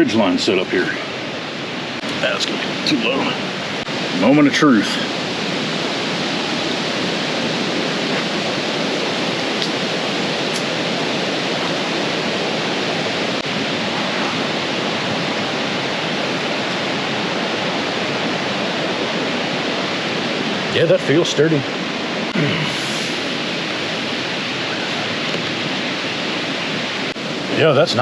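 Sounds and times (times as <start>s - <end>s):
steady rushing noise: 0.0s - 28.0s.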